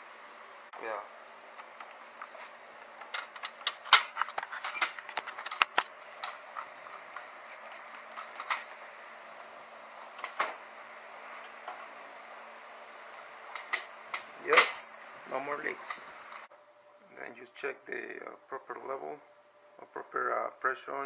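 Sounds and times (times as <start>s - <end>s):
hand tools clicking and tapping: 1.6s - 8.7s.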